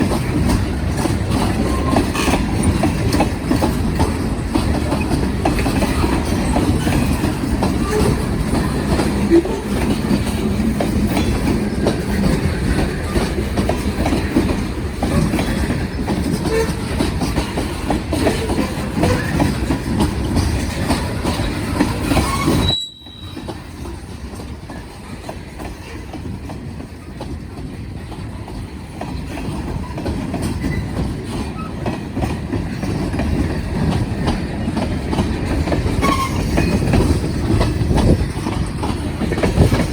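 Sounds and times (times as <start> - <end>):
train wheels clacking over rail joints: 0.0 - 39.9
faint wheel squeal: 22.1 - 23.5.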